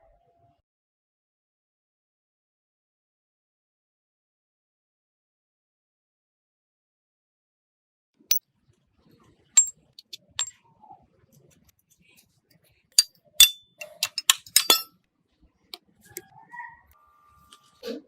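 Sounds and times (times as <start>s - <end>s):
small metal parts clinking: 13.4s - 14.9s.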